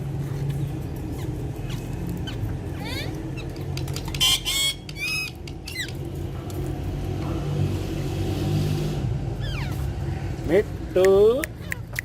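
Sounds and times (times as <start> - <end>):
parrots squawking: 0.1 - 6.1, 9.3 - 10.4.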